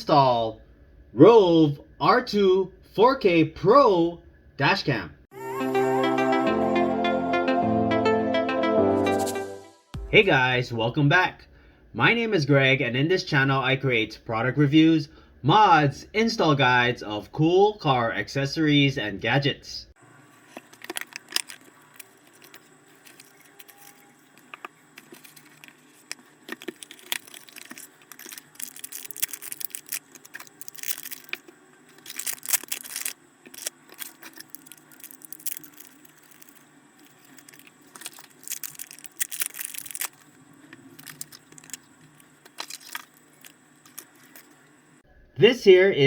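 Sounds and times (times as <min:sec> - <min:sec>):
packaging rustling and scraping: 0:20.3 - 0:44.7.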